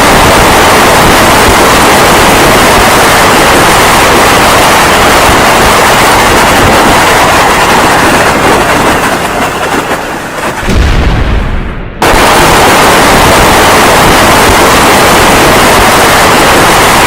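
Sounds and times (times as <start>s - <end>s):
low boom: 10.6s - 13.4s
rumbling explosion blast: 10.6s - 17.0s.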